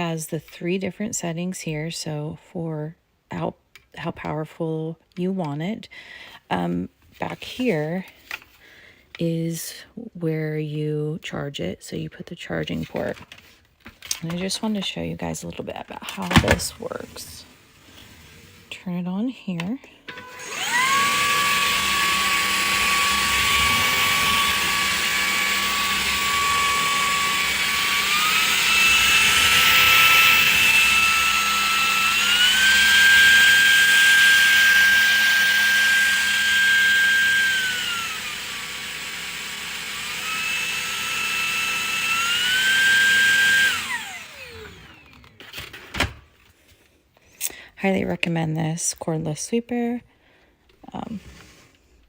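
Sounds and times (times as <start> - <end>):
vacuum motor whining: 20.1 - 46.2.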